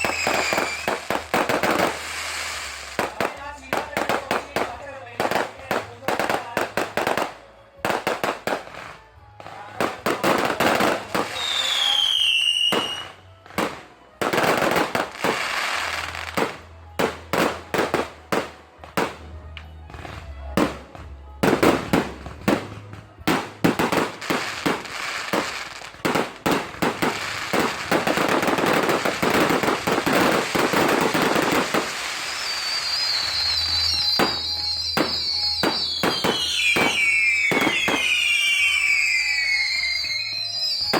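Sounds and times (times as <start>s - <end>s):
falling firework whistle: 0.0s - 2.8s, 10.8s - 13.2s, 28.4s - 40.9s
high whistling crackle: 0.0s - 3.2s, 27.0s - 40.9s
firework bangs: 0.0s - 7.3s, 9.8s - 19.3s, 20.6s - 40.9s
fireworks crackling: 0.0s - 19.4s, 20.0s - 40.9s.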